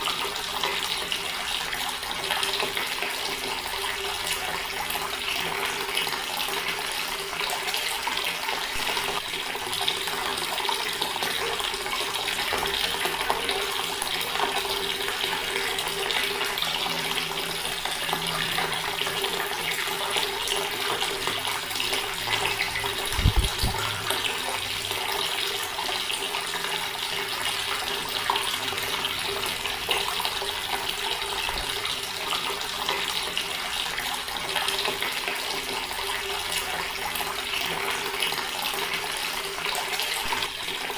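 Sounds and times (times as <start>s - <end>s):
water running from a tap: 0.0s - 40.9s.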